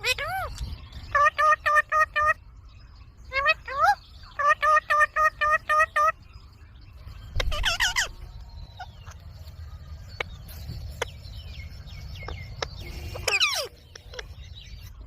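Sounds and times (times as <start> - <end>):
parakeet squawky chirps: 7.4 - 8.2, 12.9 - 14.3.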